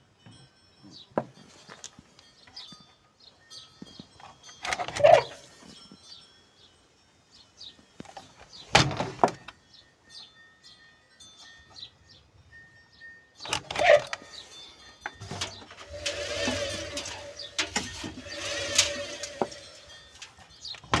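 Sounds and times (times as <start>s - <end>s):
small birds chirping: 6.0s - 8.8s, 14.1s - 21.0s.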